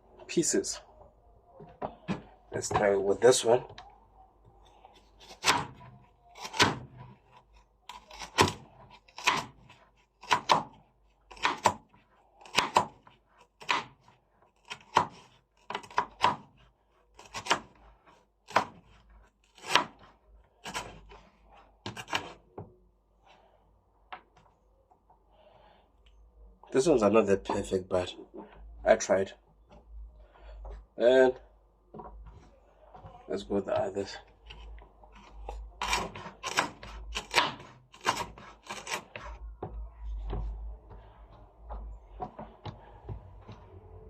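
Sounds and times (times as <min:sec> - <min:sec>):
knife slicing carrot on board: 0:07.9 - 0:13.0, 0:20.6 - 0:22.4, 0:33.7 - 0:39.3.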